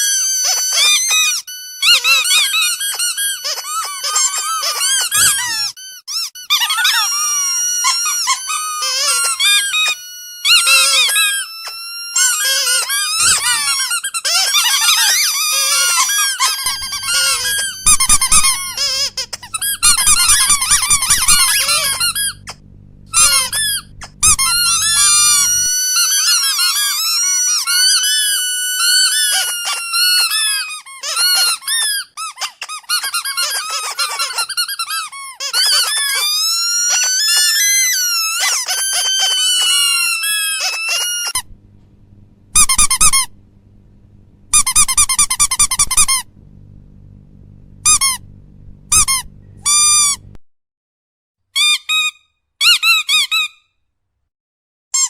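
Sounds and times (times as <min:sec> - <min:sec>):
high-pitched squeaking: 0:00.0 - 0:41.6, 0:42.4 - 0:46.4, 0:47.0 - 0:50.4
low hum: 0:16.7 - 0:25.8, 0:41.4 - 0:50.4.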